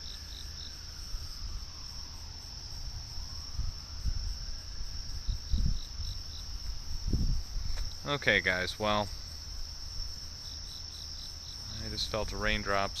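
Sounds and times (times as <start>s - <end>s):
crickets and insects chirping: 0.0s - 13.0s
distant tornado warning siren: 0.0s - 13.0s
low rumbling on microphone: 2.8s - 8.1s.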